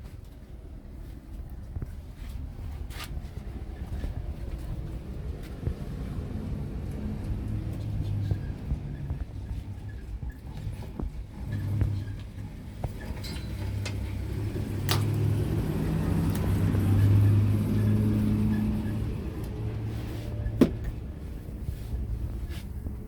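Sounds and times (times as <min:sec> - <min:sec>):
motor engine humming: 0:05.4 - 0:23.0.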